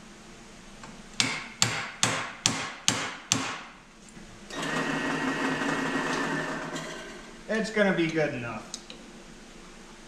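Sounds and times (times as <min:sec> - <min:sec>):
drill press running: 0:04.5 - 0:07.3.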